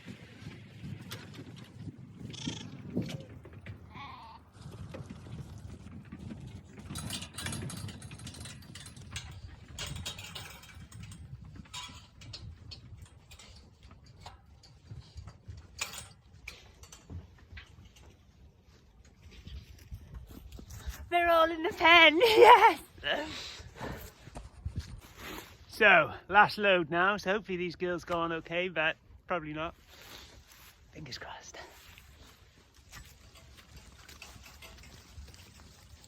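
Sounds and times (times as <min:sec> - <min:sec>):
sheep bleating: 0:02.3 - 0:02.7
clatters and knocks: 0:04.6 - 0:20.7, 0:32.2 - 0:36.0.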